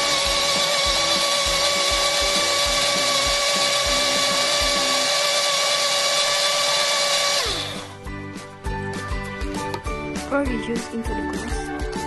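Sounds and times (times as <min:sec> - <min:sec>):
electric blender motor whine: 0:00.0 - 0:08.0.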